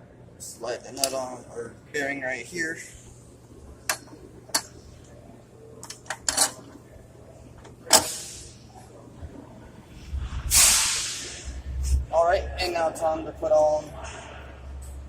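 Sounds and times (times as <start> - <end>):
metal parts clicking and clinking: 5.8 - 6.8.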